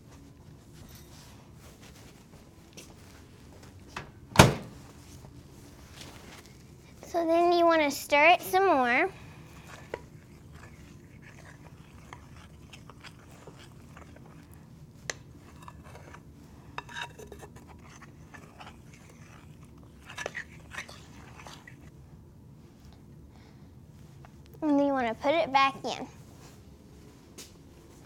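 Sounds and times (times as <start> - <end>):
spoon scraping bowl: 9.6 - 14.5, 15.4 - 21.9.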